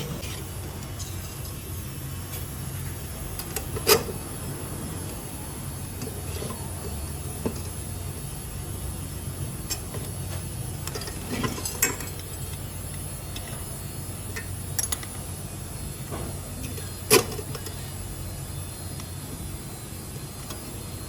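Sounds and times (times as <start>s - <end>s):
steady low hum: 0.0s - 21.0s
workshop clicks and knocks: 16.0s - 17.8s.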